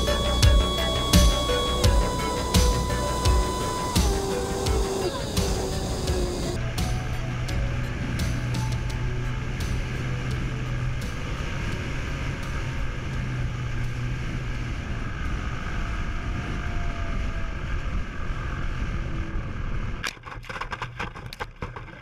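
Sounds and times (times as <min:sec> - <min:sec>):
model plane motor and propeller: 0:00.0 - 0:06.6.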